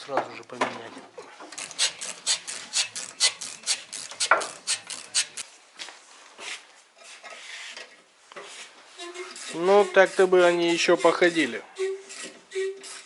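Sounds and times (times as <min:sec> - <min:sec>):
rapid scraping strokes on metal: 0:01.6 - 0:05.4, 0:08.4 - 0:13.0.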